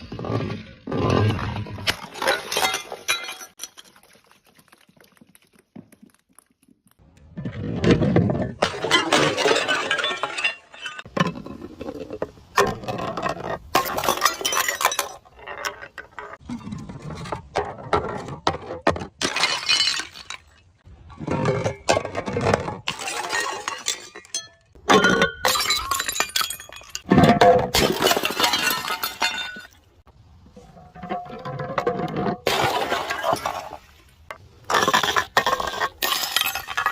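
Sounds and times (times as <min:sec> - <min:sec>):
glass bottles shattering: 0:01.9 - 0:05.6, 0:08.6 - 0:11.1, 0:13.7 - 0:15.4, 0:19.2 - 0:20.6, 0:22.9 - 0:29.8, 0:34.7 - 0:36.9.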